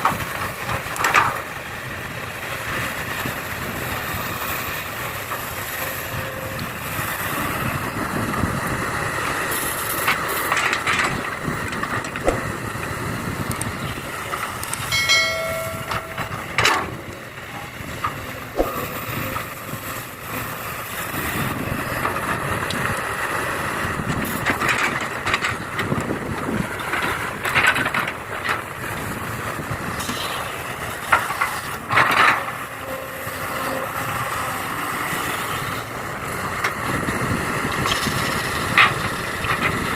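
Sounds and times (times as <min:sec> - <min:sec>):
soil scraping: 0:09.4 - 0:22.0.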